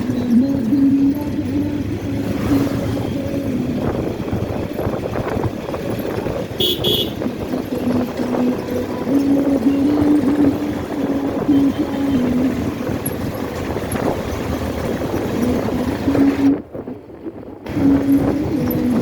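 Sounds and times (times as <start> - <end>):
motorcycle engine running: 0.0 - 16.9, 17.6 - 19.0
road and traffic noise: 0.0 - 19.0
high-pitched horn beeps: 6.6 - 7.2.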